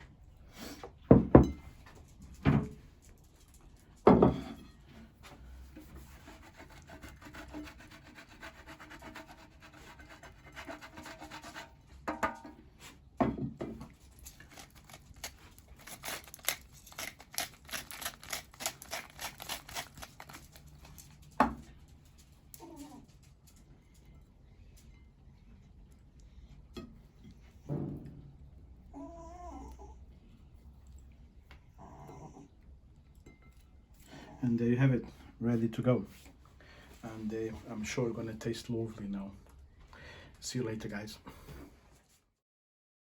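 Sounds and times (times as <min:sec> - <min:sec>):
quick scraping and clicking: 0:14.2 - 0:21.1.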